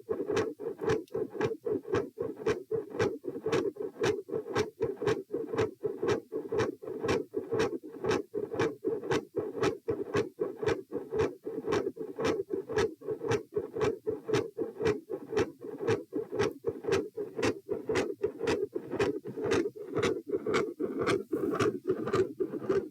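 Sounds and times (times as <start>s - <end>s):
heartbeat through stethoscope: 12.7s - 22.9s.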